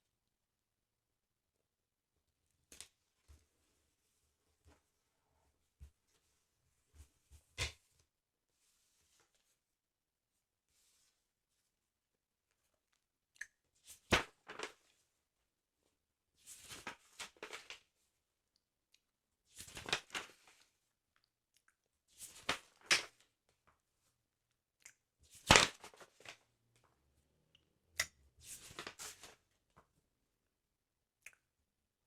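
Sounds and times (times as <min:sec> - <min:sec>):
paper crackling: 0:28.5 - 0:29.4.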